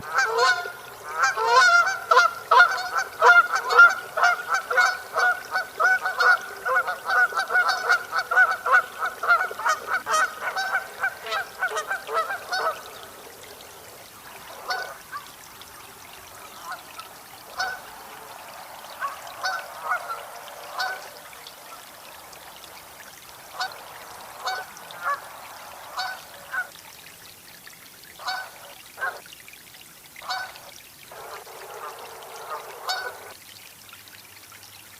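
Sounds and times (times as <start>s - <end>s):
geese honking: 0.0s - 13.9s, 14.5s - 15.3s, 16.3s - 21.8s, 23.5s - 26.7s, 30.3s - 33.4s.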